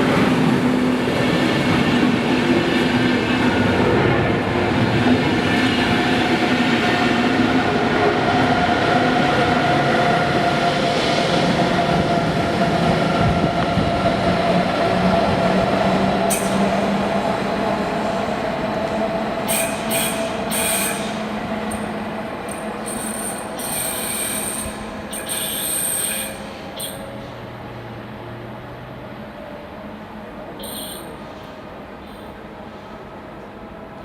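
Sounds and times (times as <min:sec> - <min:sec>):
brief high-pitched squeals: 0:30.6 - 0:31.2.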